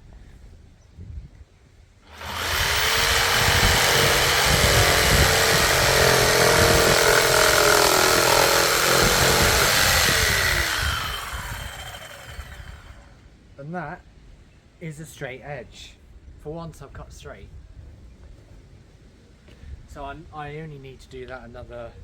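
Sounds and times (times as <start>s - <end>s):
saw cutting wood: 2.1s - 13.1s
chop saw motor whining: 2.1s - 13.2s.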